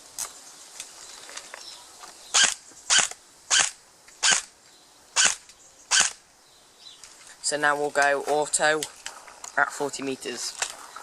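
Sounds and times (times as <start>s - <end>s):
airsoft rifle shots: 2.4s - 4.5s, 5.2s - 6.2s.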